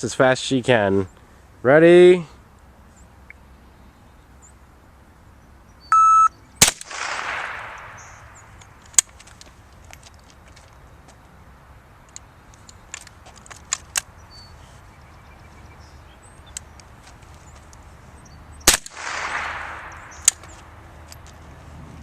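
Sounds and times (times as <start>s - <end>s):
rifle shot: 6.6s - 8.5s, 18.6s - 20.6s
small clicks of rifle action: 12.1s - 14.1s, 18.9s - 21.4s
sharp click: 18.7s - 21.4s.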